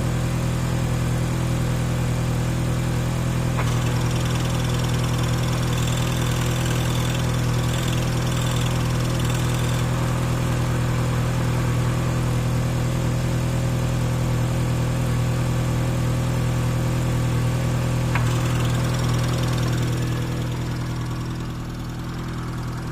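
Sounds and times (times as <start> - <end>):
car engine idling: 3.4 - 14.4, 17.4 - 22.9.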